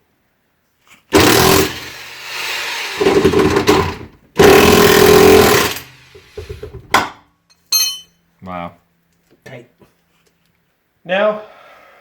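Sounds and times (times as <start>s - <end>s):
impact wrench hammering rattle: 7.5s - 8.1s.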